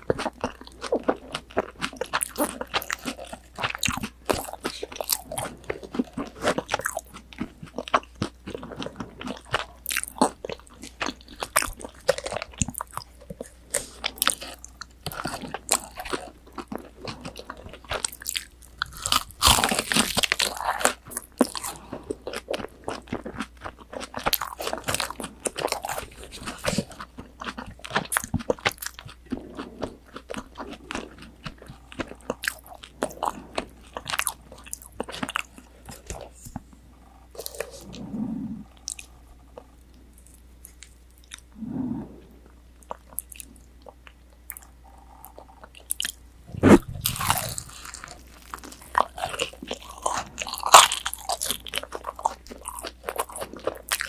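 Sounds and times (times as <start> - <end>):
crunching and chewing fried food: 0.0 - 41.6, 42.4 - 54.0.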